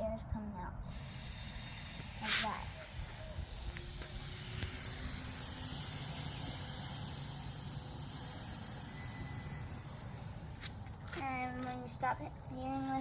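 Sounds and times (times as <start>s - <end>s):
air hissing from tyre valve: 0.8s - 11.2s.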